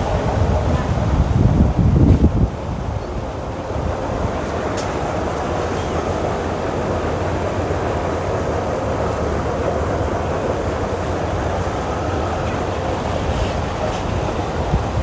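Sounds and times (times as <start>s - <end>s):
wind noise on microphone: 0.0s - 5.0s, 12.4s - 15.0s.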